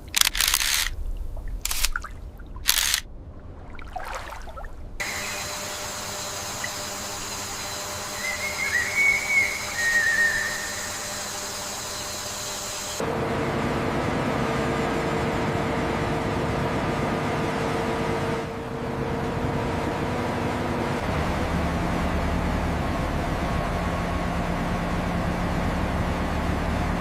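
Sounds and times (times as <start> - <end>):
steady background hum: 0.0 - 27.0
warbling whistles: 5.0 - 13.0
heavy machinery drone: 5.0 - 27.0.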